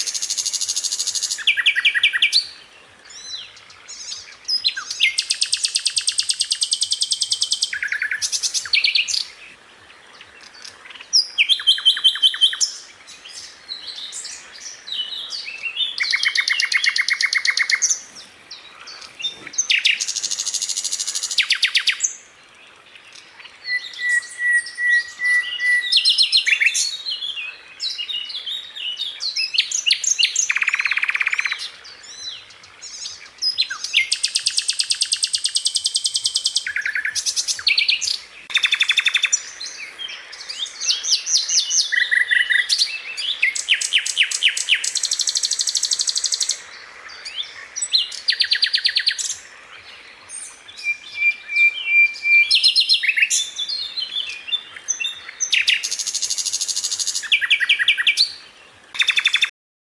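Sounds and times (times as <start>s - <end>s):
bird whistles: 23.6s - 26.8s.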